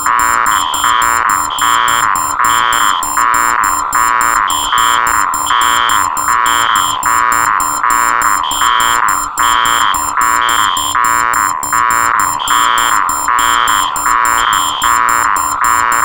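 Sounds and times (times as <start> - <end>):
harsh pulsing buzzer alarm: 0.0 - 16.0
high alarm beep: 0.0 - 16.0
rapid high chirping alarm: 0.0 - 16.0.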